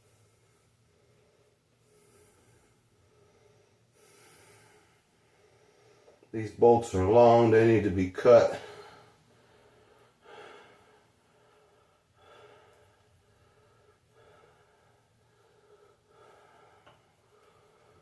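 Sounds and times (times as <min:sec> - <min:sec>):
faint breaths: 0:00.0 - 0:06.7, 0:08.5 - 0:18.0.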